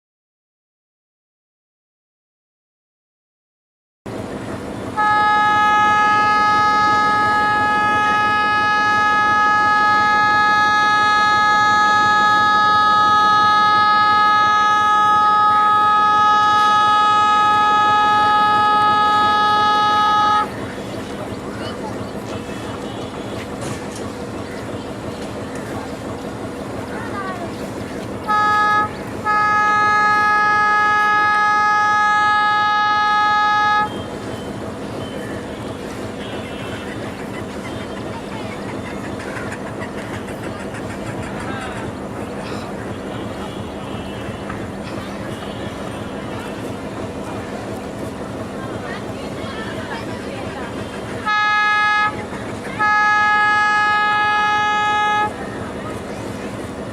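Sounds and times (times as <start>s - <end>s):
locomotive air horn blast: 4.9s - 21.1s, 28.2s - 34.7s, 42.7s - 47.6s, 50.7s - 55.6s.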